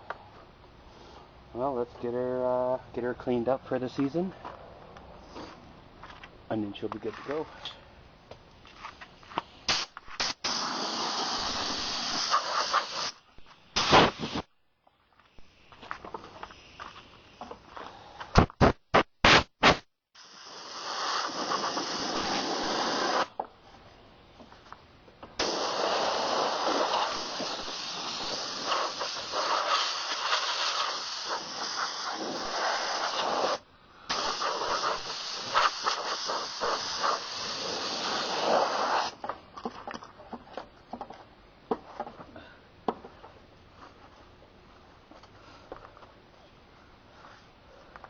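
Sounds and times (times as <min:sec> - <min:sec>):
compressed air blow gun blasts: 0:09.6 - 0:14.5, 0:18.3 - 0:23.4, 0:25.4 - 0:39.2.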